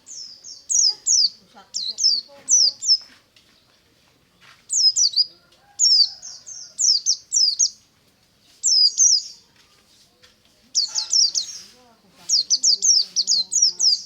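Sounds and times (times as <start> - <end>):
bird chirping high: 0.0 - 3.1, 4.7 - 7.8, 8.6 - 9.4, 10.8 - 14.0.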